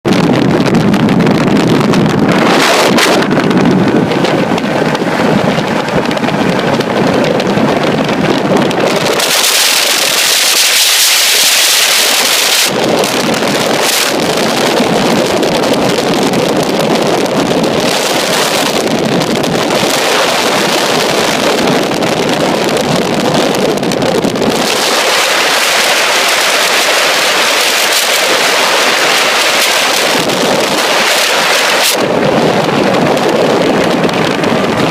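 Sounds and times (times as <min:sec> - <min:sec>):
wind buffeting microphone: 0:00.0 - 0:34.9
boat engine: 0:00.1 - 0:34.9
water rushing: 0:02.0 - 0:14.7, 0:24.3 - 0:34.9.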